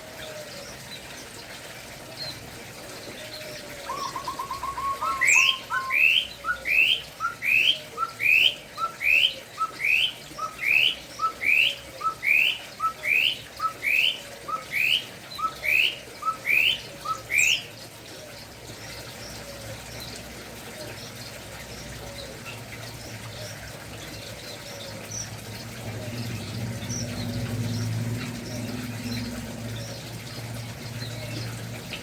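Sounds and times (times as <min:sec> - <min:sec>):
bird whistling rising notes: 0:03.9 - 0:17.6.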